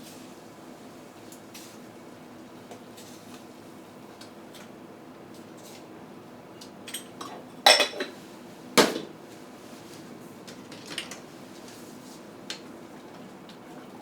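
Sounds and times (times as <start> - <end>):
cookware clanking: 7.7 - 8.1.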